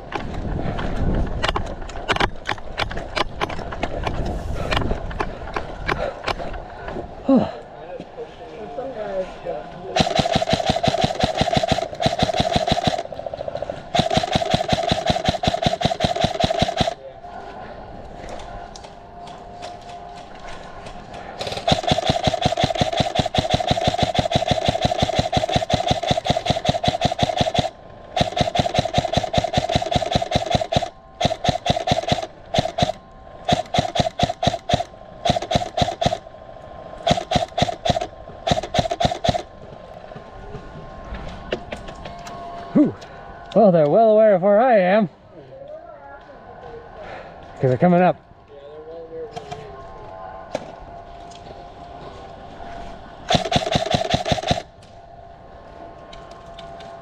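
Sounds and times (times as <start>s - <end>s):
airsoft gun firing full auto: 10.0s - 13.2s, 13.9s - 17.0s, 21.4s - 36.2s, 37.0s - 39.5s, 53.3s - 54.8s.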